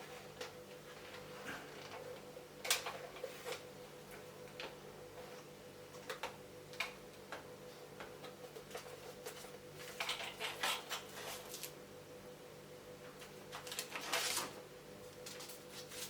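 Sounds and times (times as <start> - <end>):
packaging rustling: 13.5 - 14.5.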